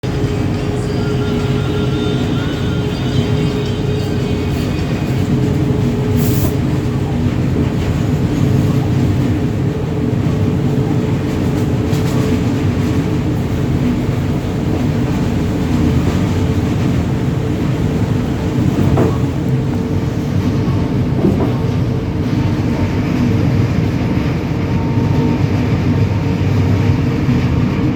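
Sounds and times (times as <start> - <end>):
steady tonal hum: 0.0 - 8.5
electric locomotive rumbling: 0.0 - 27.9.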